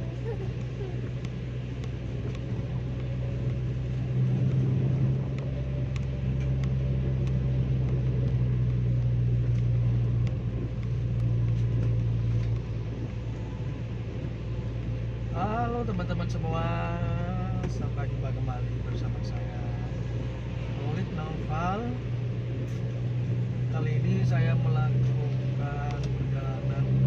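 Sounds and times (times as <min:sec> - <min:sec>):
raindrops tapping on car: 0:00.0 - 0:21.1
engine and tyre drone: 0:00.0 - 0:27.0.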